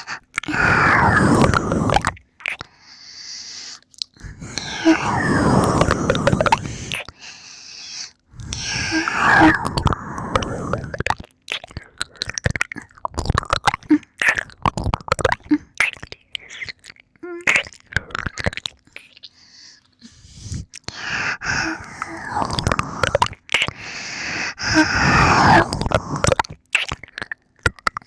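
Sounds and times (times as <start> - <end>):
tongue clicks: 0.0 - 2.8, 3.5 - 7.2, 8.4 - 23.9, 24.5 - 28.0
lip smacks: 0.0 - 7.3, 8.0 - 28.0
breathing and gasps: 2.6 - 10.9, 19.0 - 26.4
wet licking sounds: 8.4 - 28.0.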